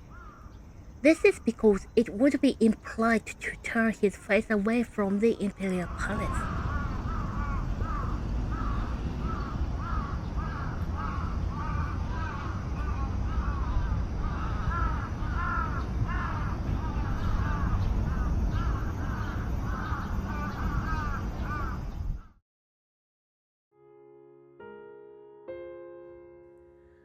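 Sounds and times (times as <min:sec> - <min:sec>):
crows cawing: 0:00.0 - 0:00.6, 0:05.6 - 0:22.4
low background noise: 0:00.0 - 0:22.2.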